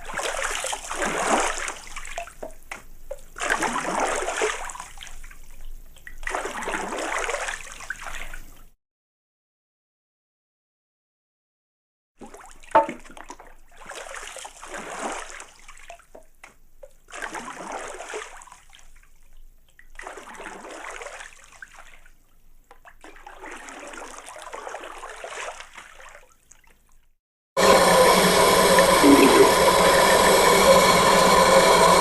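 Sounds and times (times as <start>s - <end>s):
water splashing and sloshing: 0.0s - 8.8s, 12.2s - 27.7s
loud droning with held tones: 27.6s - 32.0s.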